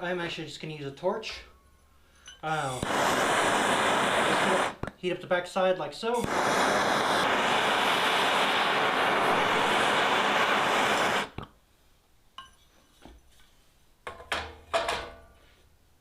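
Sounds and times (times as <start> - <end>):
gas torch hissing: 2.4 - 4.9, 6.1 - 11.4.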